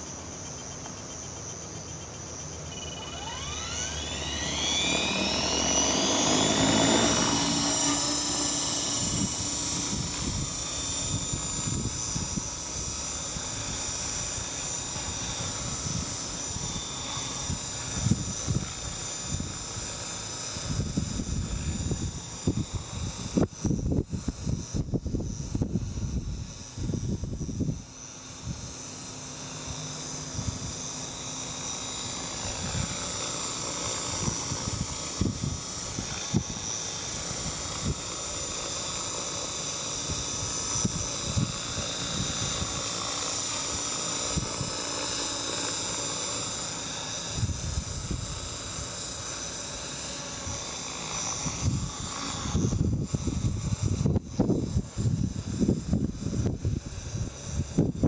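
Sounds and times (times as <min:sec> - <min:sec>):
helicopter rotor whine: 0:00.0 - 0:58.0
wind buffeting microphone: 0:08.8 - 0:19.8, 0:20.6 - 0:28.7, 0:34.1 - 0:38.1, 0:40.0 - 0:42.9, 0:47.3 - 0:48.5, 0:51.4 - 0:58.0.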